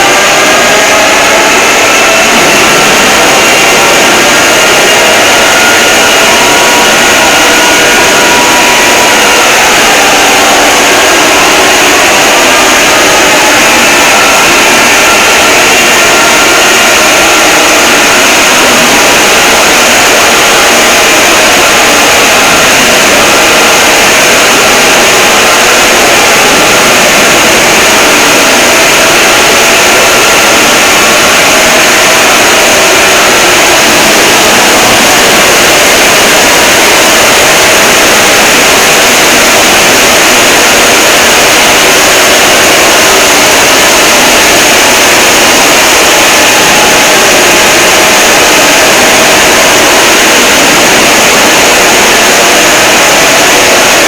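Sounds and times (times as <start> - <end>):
distorted alert alarm noise: 0.0 - 54.0.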